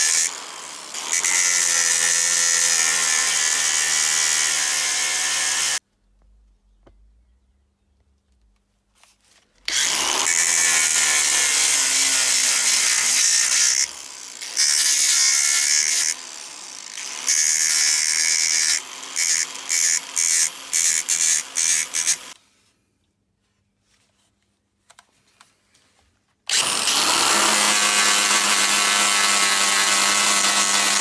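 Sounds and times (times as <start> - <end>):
power tool on metal: 0.0 - 5.8, 9.7 - 22.4, 26.5 - 31.0.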